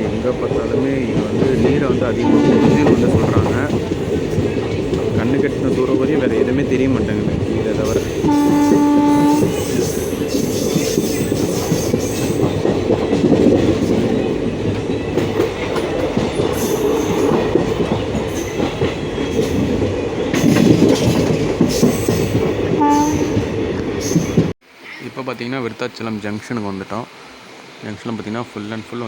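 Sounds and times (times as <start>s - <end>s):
train wheels clattering on rails: 0.0s - 24.6s
train horn: 2.2s - 3.7s, 8.2s - 9.8s, 22.7s - 23.6s.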